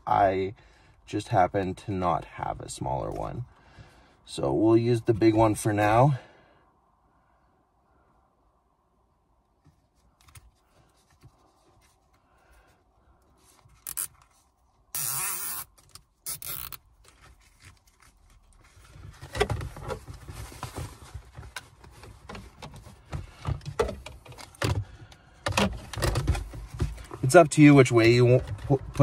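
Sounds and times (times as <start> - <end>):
zip tie ratcheting tight: 13.8 - 14.2, 14.9 - 16.8.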